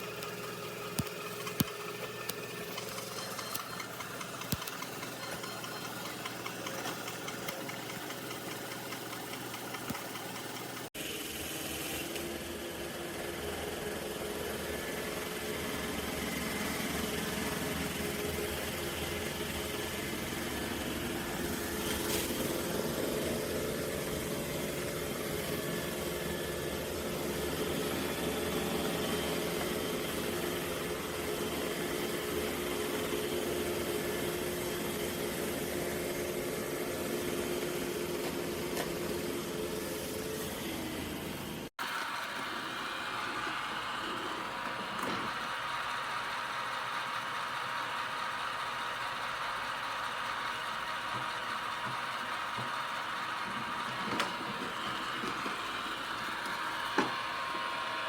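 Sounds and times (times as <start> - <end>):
robot vacuum motor whir: 0.0 - 10.9, 50.3 - 58.0.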